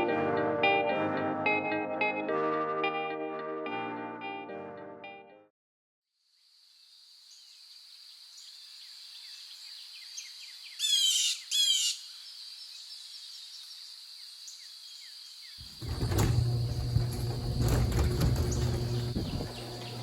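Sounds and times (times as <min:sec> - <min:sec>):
harsh bird calls: 0:09.9 - 0:13.0.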